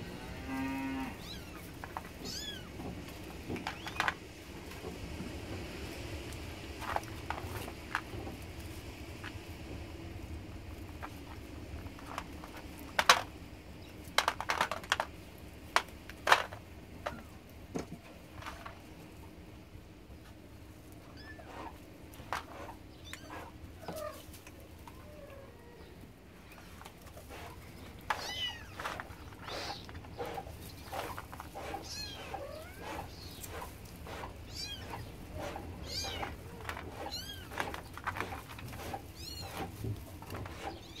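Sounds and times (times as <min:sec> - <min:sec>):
kittens mewing: 0:22.7 - 0:37.7, 0:39.0 - 0:39.8.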